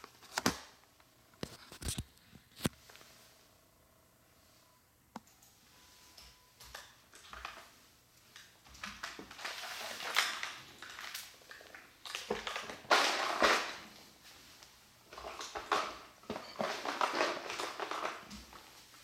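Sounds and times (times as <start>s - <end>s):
plastic parts clicking and rattling: 8.4s - 13.8s, 15.1s - 18.6s.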